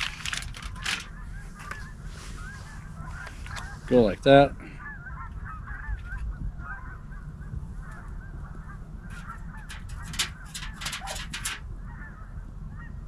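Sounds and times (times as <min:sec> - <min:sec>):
sharp crackles: 0:00.0 - 0:03.8, 0:09.1 - 0:11.6
geese honking: 0:00.0 - 0:13.0.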